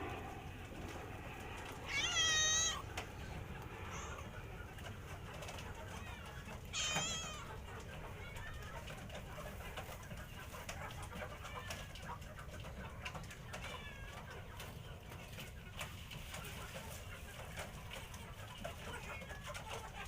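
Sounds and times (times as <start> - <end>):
cats meowing: 1.8 - 3.0, 3.8 - 4.4, 5.9 - 8.7, 13.4 - 14.5.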